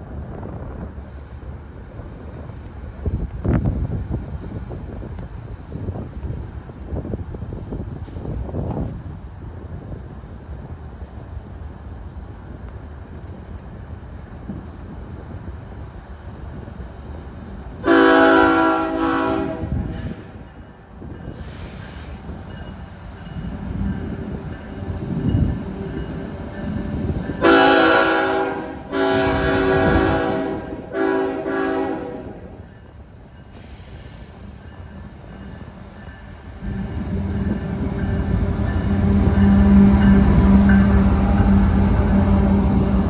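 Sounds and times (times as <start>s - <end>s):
train rumble: 0.0s - 43.0s
locomotive air horn: 17.8s - 20.2s, 27.4s - 32.6s, 36.6s - 43.0s.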